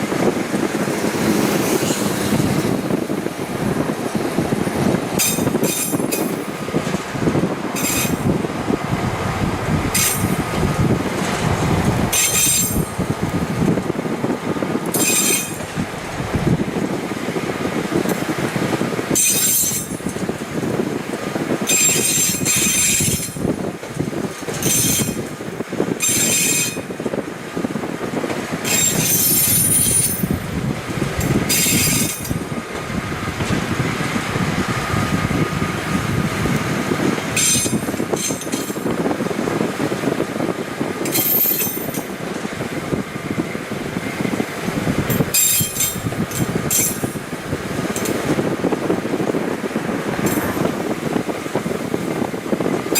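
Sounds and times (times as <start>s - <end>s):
rail motor car rumbling on track: 0.0s - 52.9s
high-pitched wheel screeches: 7.8s - 8.3s, 9.9s - 13.2s, 14.9s - 16.9s.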